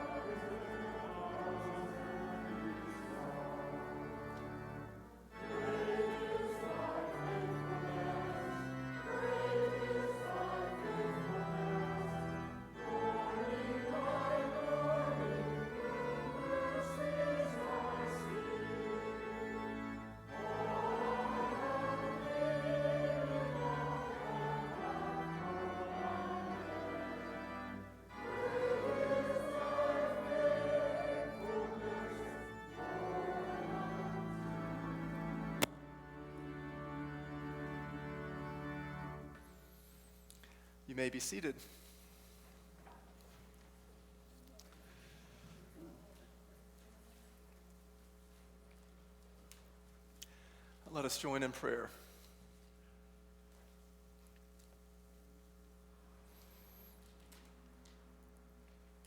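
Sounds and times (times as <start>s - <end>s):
group singing a hymn: 0.0s - 39.1s
pipe organ accompaniment: 0.0s - 42.4s.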